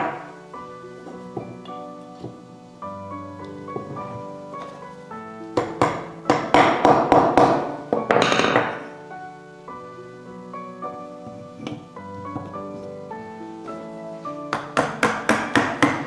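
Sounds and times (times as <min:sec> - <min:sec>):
soft piano music: 0:00.0 - 0:16.0
hammer knocking on wood: 0:05.6 - 0:08.8, 0:14.5 - 0:16.0.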